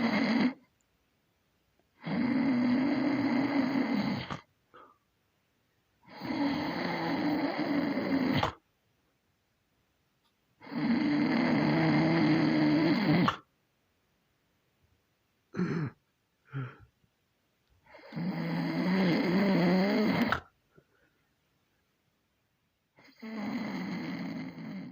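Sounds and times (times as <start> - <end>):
person snoring: 0.0 - 0.6, 2.0 - 4.9, 6.1 - 8.6, 10.6 - 13.5, 15.6 - 16.8, 17.9 - 20.5, 23.0 - 24.9.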